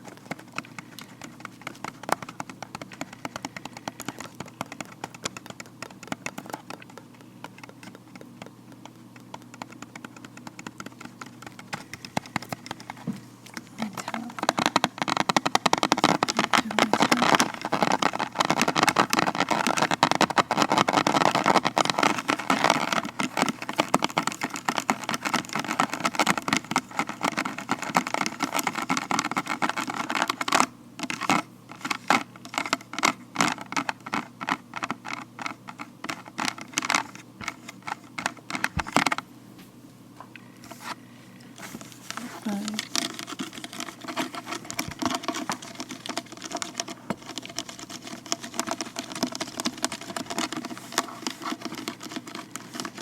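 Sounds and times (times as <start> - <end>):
gloved fingertips tapping and scratching: 0.0 - 39.2, 40.3 - 53.0.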